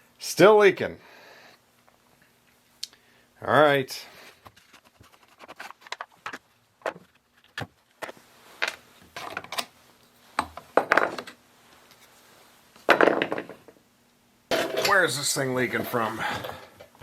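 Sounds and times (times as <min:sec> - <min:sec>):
tools clattering: 0:14.5 - 0:15.3.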